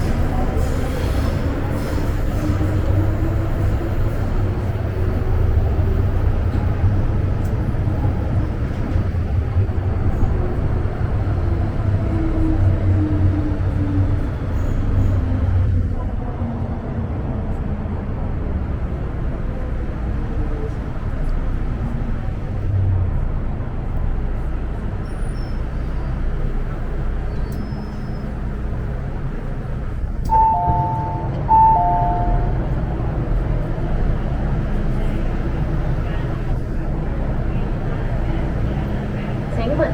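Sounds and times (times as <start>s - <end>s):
train wheels rumbling on rail: 0.0s - 39.9s.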